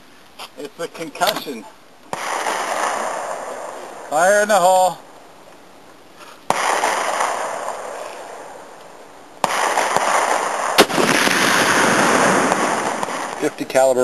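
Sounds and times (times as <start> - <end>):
rifle shots: 2.1 - 4.4, 6.5 - 8.8, 9.4 - 14.0.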